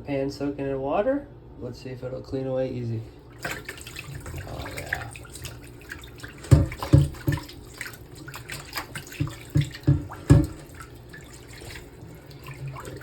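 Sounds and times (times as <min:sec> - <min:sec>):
water running and splashing: 0:03.3 - 0:13.0
pan being scrubbed in water: 0:03.4 - 0:13.0
pan knocking dully: 0:06.3 - 0:13.0.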